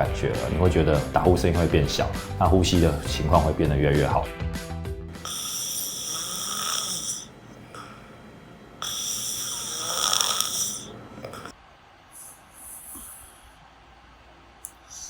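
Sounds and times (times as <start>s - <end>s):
person snoring: 5.1s - 8.2s, 8.8s - 11.6s.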